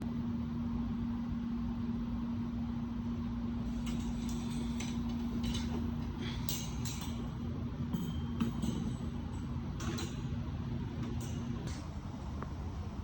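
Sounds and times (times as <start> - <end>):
steady machine hum: 0.0 - 13.0
tools clicking and clinking: 3.8 - 7.3, 8.0 - 10.4.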